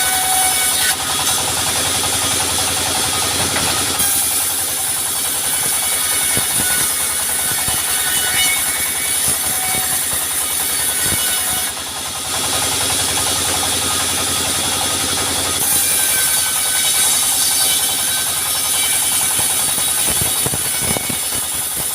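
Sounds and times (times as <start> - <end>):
saw cutting wood: 0.0 - 21.9
engine drone: 0.1 - 15.7
machinery knocks: 3.2 - 4.4.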